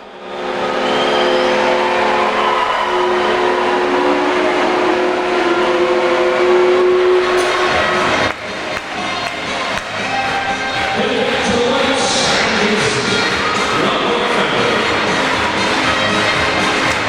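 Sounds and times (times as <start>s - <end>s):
crowd noise: 0.0s - 17.0s
air horn chord: 3.0s - 8.4s.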